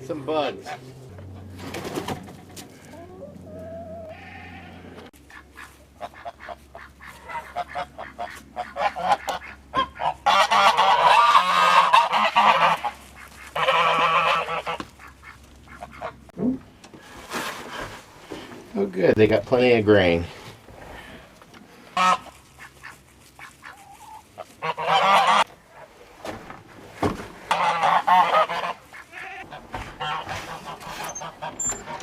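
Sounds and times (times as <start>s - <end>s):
geese honking: 2.7s - 16.3s, 21.9s - 25.9s, 27.5s - 32.0s.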